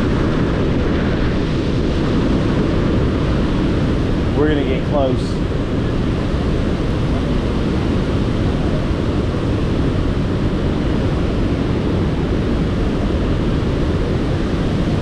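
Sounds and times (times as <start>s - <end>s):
waterfall rushing: 4.5s - 6.4s.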